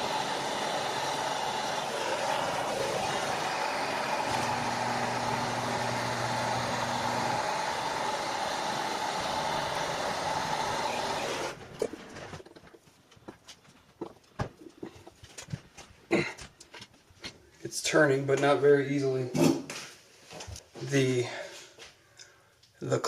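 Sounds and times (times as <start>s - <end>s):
heat gun hissing: 0.0s - 11.8s.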